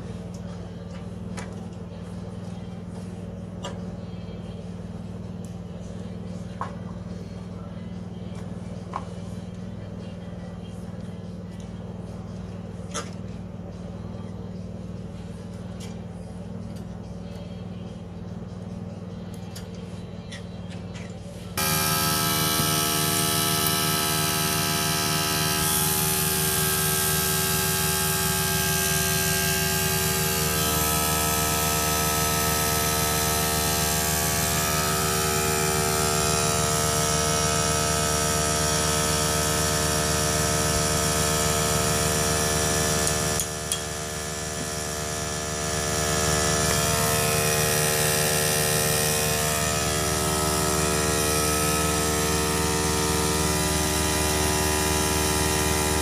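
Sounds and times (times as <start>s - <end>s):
small engine running: 21.4s - 56.0s.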